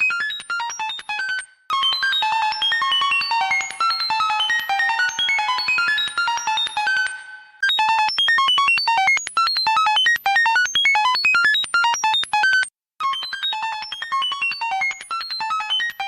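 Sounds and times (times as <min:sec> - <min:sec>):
rapid electronic beeps: 0:01.8 - 0:07.7.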